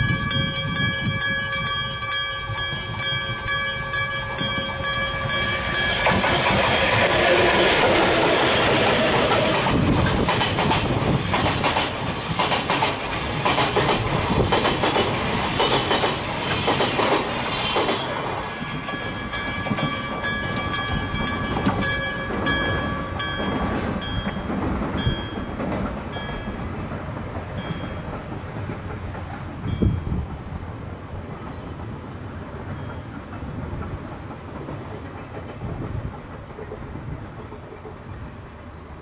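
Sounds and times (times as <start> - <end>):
crossing warning bell ringing: 0.0 - 11.1, 17.9 - 28.7, 29.6 - 30.4, 32.7 - 33.9
train wheels clacking over rail joints: 0.0 - 38.2.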